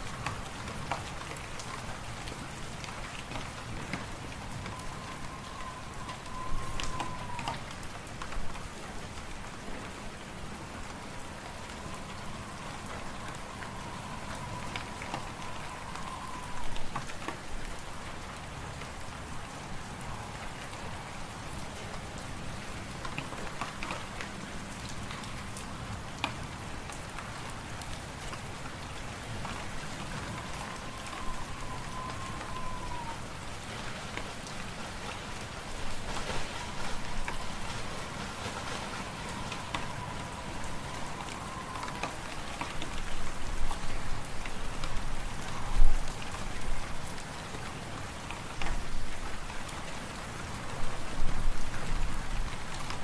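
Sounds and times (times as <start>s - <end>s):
wind whistling: 3.5s - 8.1s, 11.4s - 23.0s, 28.4s - 47.1s.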